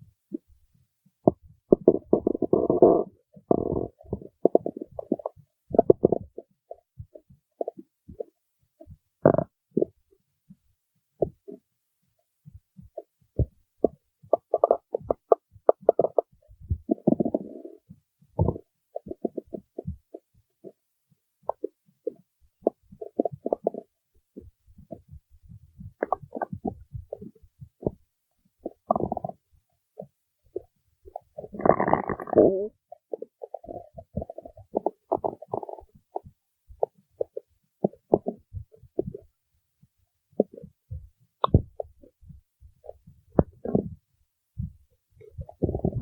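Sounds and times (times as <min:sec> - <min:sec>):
stomach growling: 0:01.2 - 0:10.0, 0:13.0 - 0:20.8, 0:21.5 - 0:28.0, 0:28.6 - 0:39.4, 0:40.4 - 0:42.2, 0:42.8 - 0:44.0, 0:44.6 - 0:46.0.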